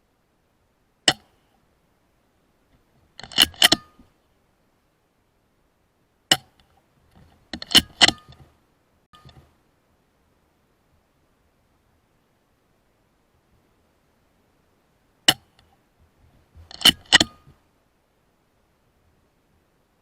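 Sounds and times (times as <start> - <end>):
metallic clicks of rifle lever: 1.1 - 1.4, 3.2 - 4.1, 6.3 - 8.5, 16.6 - 17.6.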